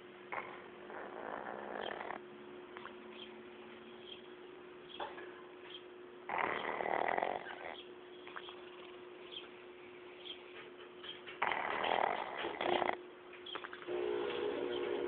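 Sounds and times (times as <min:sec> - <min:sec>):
faint steady hum: 0:00.0 - 0:15.0
pet snoring: 0:00.3 - 0:02.2, 0:06.3 - 0:08.9, 0:11.4 - 0:13.0.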